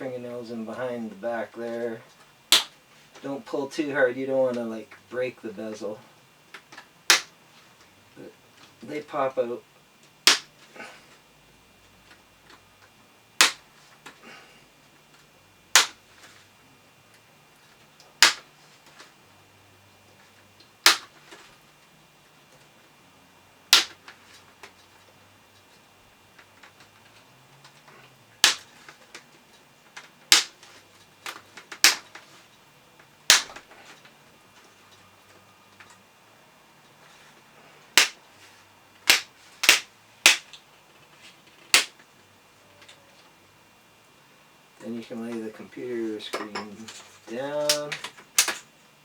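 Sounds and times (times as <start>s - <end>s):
plastic clips snapping: 2.5s - 2.8s, 15.7s - 16.0s, 18.2s - 18.4s, 20.8s - 21.2s, 28.4s - 29.2s, 30.0s - 30.6s, 31.2s - 32.2s, 33.3s - 33.6s, 41.7s - 42.0s, 47.6s - 48.6s.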